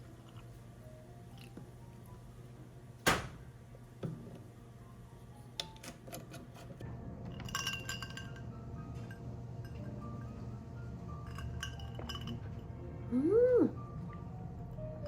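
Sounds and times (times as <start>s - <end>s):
glassy clinks: 7.4s - 10.3s, 11.2s - 12.6s.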